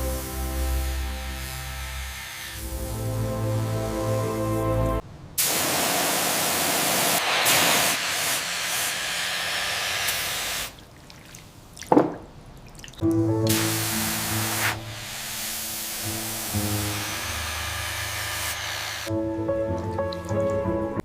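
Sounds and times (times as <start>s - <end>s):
hissing spray: 0.0s - 10.8s, 13.5s - 19.1s.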